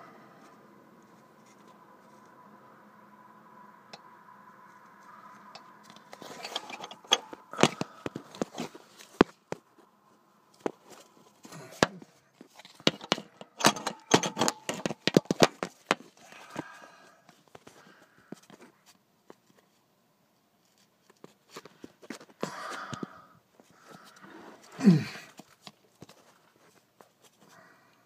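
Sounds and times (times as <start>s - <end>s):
metallic clicks and scrapes of tools: 5.4s - 9.3s, 11.7s - 16.7s.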